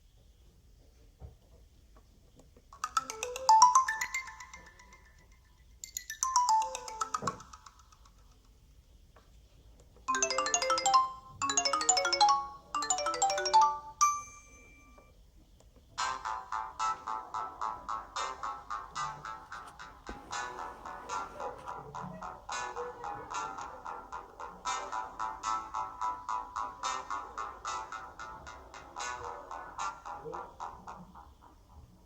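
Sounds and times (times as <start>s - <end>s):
electronic phone ringtones: 2.8s - 5.4s, 6.0s - 7.7s, 10.1s - 15.1s.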